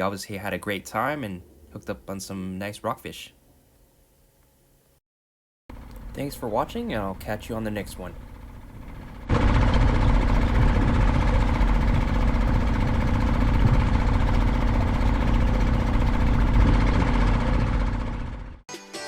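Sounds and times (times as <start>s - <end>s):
motor running: 5.7s - 18.6s
music: 18.7s - 19.0s.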